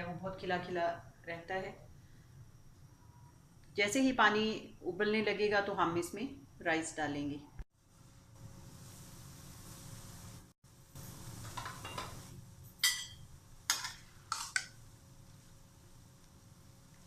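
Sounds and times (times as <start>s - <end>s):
steady background hiss: 0.0s - 17.0s
metal utensils clinking on cookware: 11.5s - 12.2s, 12.8s - 14.7s.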